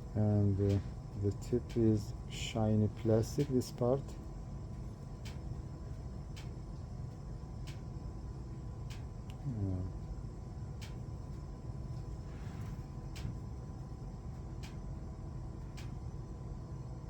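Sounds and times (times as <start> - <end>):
low room hum: 0.0 - 17.0
faint light clicks: 8.9 - 9.4
person murmuring: 9.4 - 9.9
soft rustle: 12.0 - 13.0.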